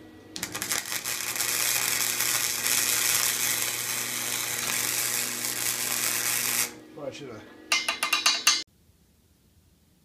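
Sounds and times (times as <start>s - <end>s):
low electrical hum: 0.0s - 10.0s
welding arc crackling hiss: 0.4s - 6.8s.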